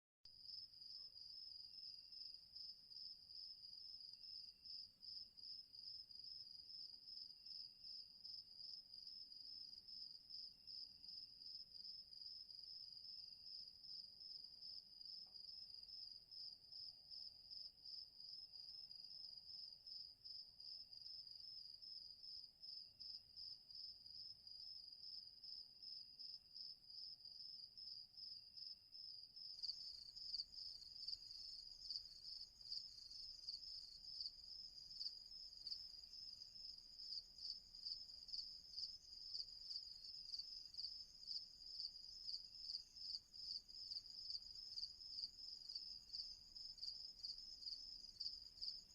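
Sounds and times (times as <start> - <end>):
crickets chirping: 0.4 - 48.9
higher cricket chirping: 27.6 - 48.9.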